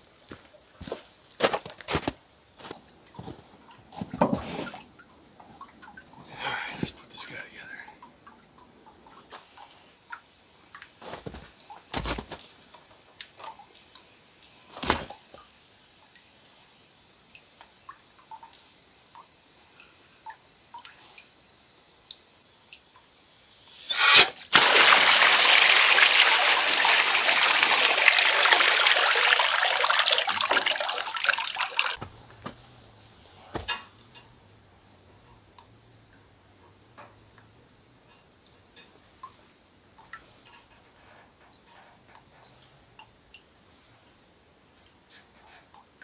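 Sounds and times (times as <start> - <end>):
rush of water: 24.0 - 32.0.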